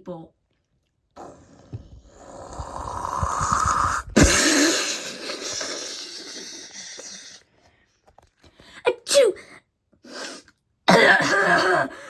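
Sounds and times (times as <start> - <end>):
crowd coughing and wheezing: 4.2 - 7.4.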